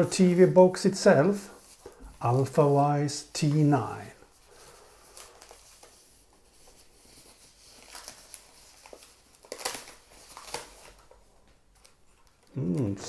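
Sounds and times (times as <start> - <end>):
packaging rustling: 3.4 - 12.6
packaging crinkling: 3.5 - 12.9.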